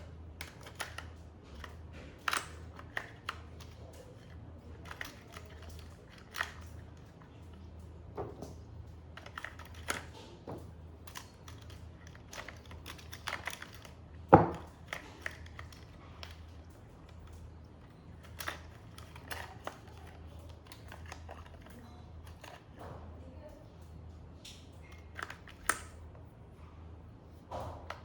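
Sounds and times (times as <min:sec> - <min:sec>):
plastic toy packaging handled: 0:00.0 - 0:07.7, 0:09.0 - 0:22.8.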